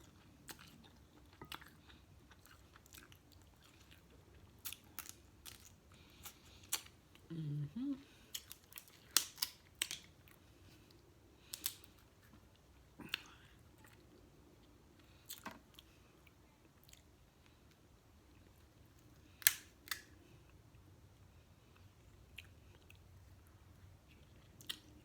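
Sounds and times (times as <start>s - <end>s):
close-up chewing: 0.0s - 7.3s.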